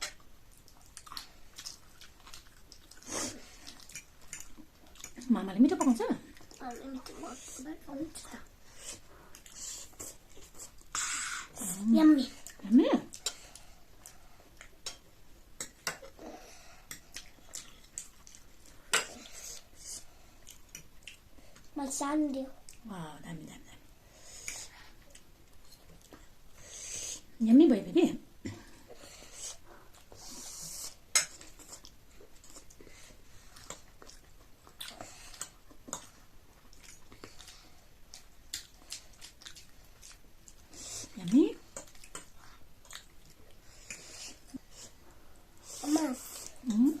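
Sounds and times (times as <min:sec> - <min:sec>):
wet chewing and mouth smacks: 0:00.0 - 0:05.3, 0:08.9 - 0:11.0, 0:12.4 - 0:16.2, 0:16.8 - 0:21.7, 0:29.4 - 0:45.4.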